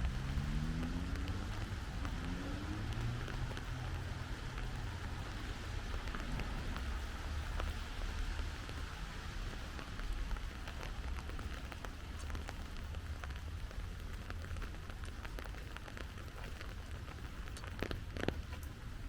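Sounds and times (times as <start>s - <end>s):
low rumble: 0.0s - 19.0s
rain pattering: 0.0s - 19.0s.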